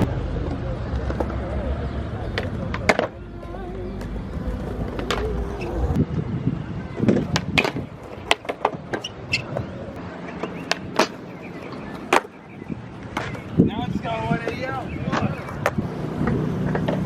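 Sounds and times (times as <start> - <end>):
skateboard rolling on pavement: 0.0 - 17.0
skateboard clacks and slaps: 2.2 - 6.2, 7.0 - 12.4, 13.0 - 13.5, 14.4 - 17.0.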